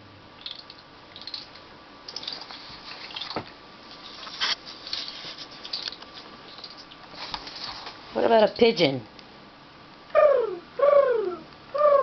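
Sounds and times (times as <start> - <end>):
boy imitating squirrel chatter: 10.1 - 12.0.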